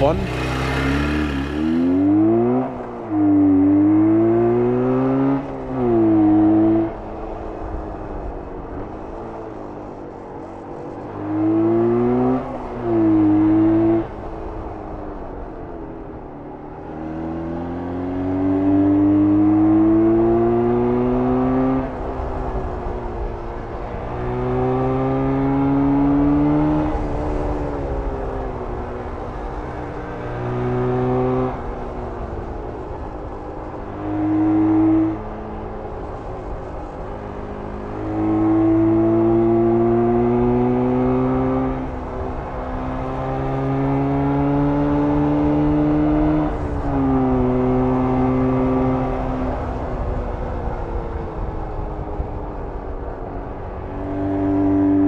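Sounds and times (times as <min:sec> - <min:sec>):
two-stroke motorcycle engine revving: 0:00.0 - 0:05.3.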